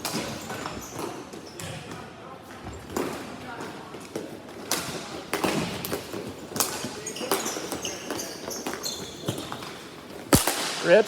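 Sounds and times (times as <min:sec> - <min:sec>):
high shoe squeaks: 0:00.1 - 0:01.8, 0:06.3 - 0:10.4.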